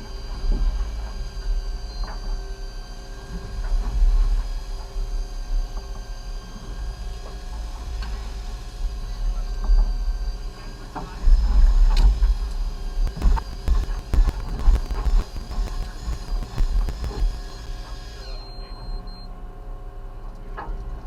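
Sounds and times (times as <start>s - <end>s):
boat engine running: 11.7s - 18.2s
faint clicks and knocks: 13.0s - 17.9s.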